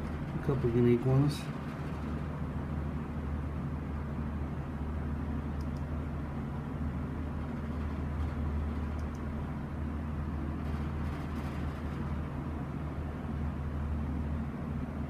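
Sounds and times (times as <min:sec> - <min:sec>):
electric fan running: 0:00.0 - 0:15.0
faint clicks: 0:05.6 - 0:05.9.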